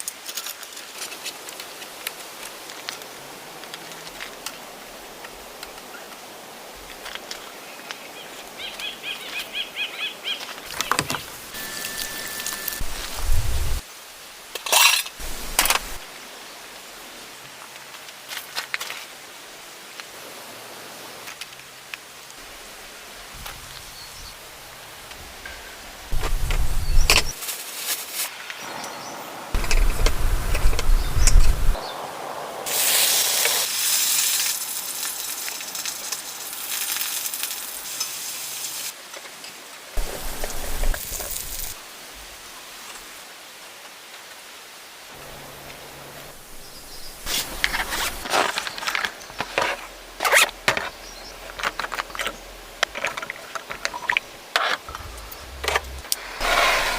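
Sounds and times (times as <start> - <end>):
food sizzling in a pan: 32.6 - 39.0, 40.0 - 41.8.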